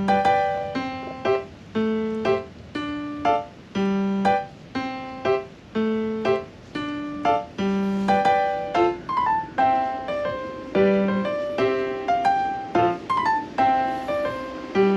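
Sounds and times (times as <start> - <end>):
piano-like melody: 0.0 - 14.9.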